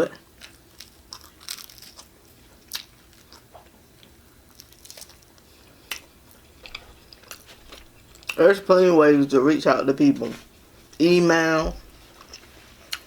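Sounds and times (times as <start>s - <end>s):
person chewing and biting food: 0.2s - 8.4s, 11.8s - 13.0s.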